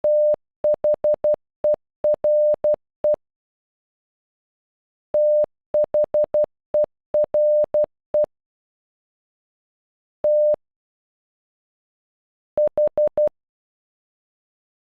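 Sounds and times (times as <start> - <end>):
morse code beeps: 0.0 - 1.4, 2.1 - 3.2, 5.2 - 8.3, 10.3 - 10.6.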